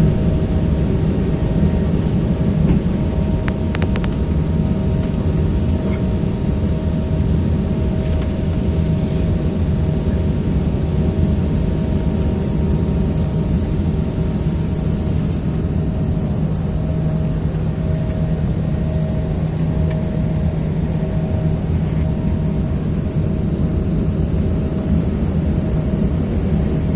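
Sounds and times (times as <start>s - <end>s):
airliner cabin engine rush: 0.0s - 26.9s
low hum: 0.0s - 26.9s.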